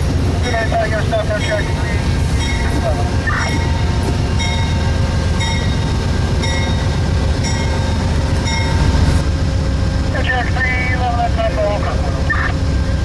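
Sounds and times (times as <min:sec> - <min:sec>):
train rumbling past: 0:00.0 - 0:13.0
bell striking: 0:05.4 - 0:08.9.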